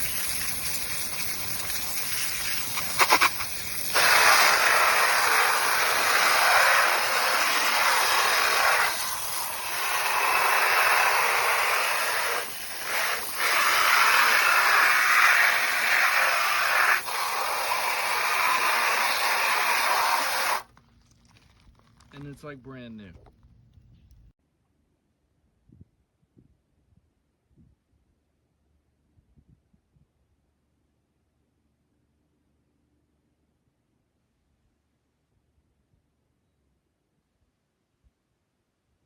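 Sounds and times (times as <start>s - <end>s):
water jet spraying plastic: 0.0s - 20.7s.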